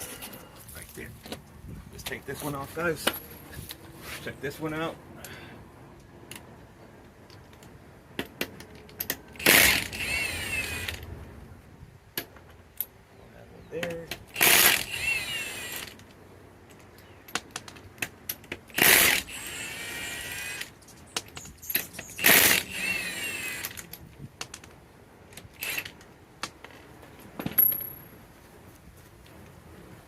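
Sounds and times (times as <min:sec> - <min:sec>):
impact wrench bursts: 0:09.3 - 0:11.0, 0:14.2 - 0:16.0, 0:18.7 - 0:20.7, 0:21.5 - 0:23.8, 0:25.5 - 0:26.0.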